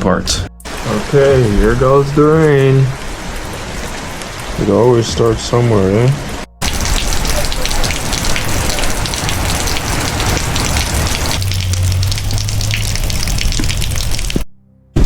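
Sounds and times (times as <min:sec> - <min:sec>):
rain hissing on surfaces: 0:00.6 - 0:14.4
low steady hum: 0:08.4 - 0:14.3.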